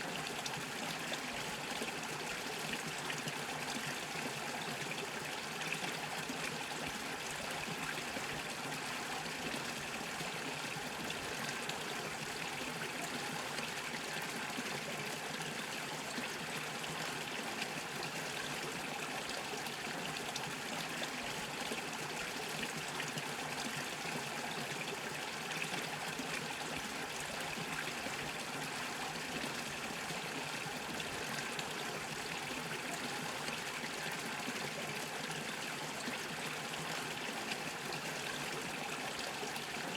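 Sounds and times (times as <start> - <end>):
brook bubbling over stones: 0.0 - 39.9.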